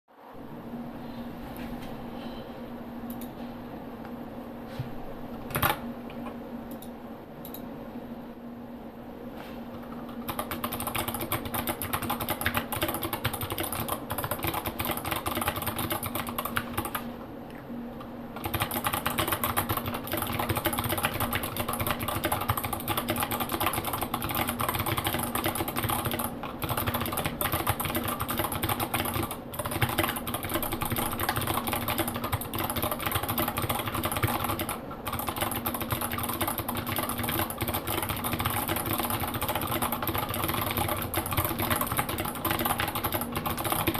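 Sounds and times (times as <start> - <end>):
clicky mechanical keyboard typing: 5.5 - 5.8, 9.8 - 17.1, 18.4 - 43.9.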